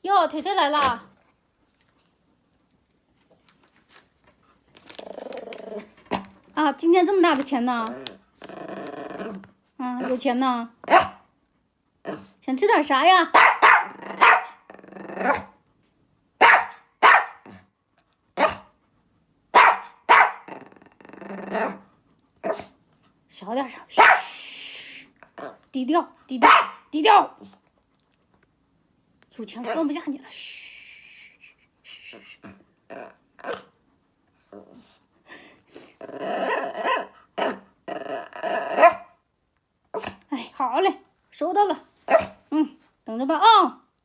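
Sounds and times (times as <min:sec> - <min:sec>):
dog woofing and grumbling: 0:04.8 - 0:06.3, 0:07.8 - 0:10.2, 0:13.4 - 0:15.5, 0:20.2 - 0:22.7, 0:32.4 - 0:33.7, 0:36.0 - 0:39.1
dog barking: 0:10.9 - 0:11.2, 0:13.3 - 0:14.6, 0:16.4 - 0:17.6, 0:18.4 - 0:18.7, 0:19.5 - 0:20.5, 0:24.0 - 0:24.3, 0:26.4 - 0:26.9, 0:38.8 - 0:39.2, 0:42.1 - 0:42.4
person hushing: 0:30.5 - 0:32.6.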